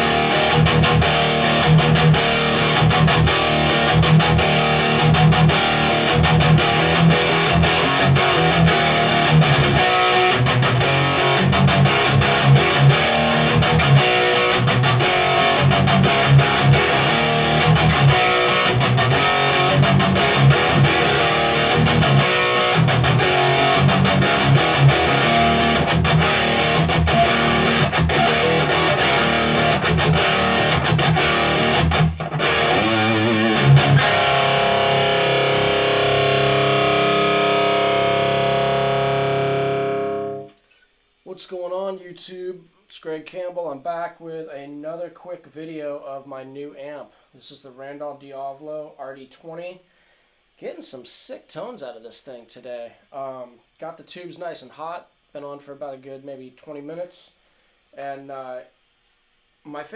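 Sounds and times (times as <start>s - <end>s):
distorted electric guitar riff: 0.0s - 40.7s.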